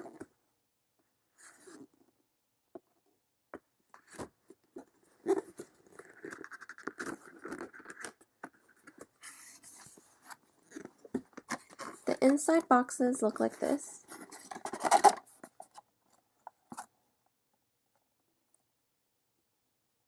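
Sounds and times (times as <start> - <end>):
packaging rustling and scraping: 4.0 - 16.9.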